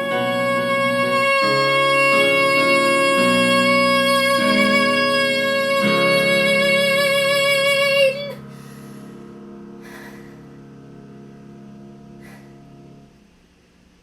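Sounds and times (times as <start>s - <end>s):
woman singing long belted note: 0.0s - 8.5s
musical accompaniment: 0.0s - 13.0s.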